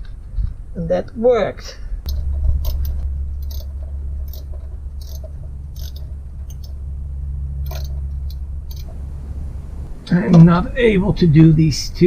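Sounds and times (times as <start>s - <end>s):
steady low rumble: 1.8s - 12.0s
wrench clicking on nut: 2.1s - 3.7s, 4.3s - 6.7s.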